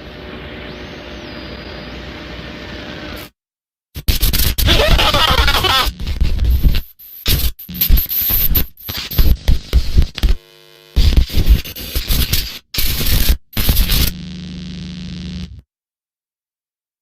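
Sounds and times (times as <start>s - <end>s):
harsh static bursts: 4.0s - 15.6s.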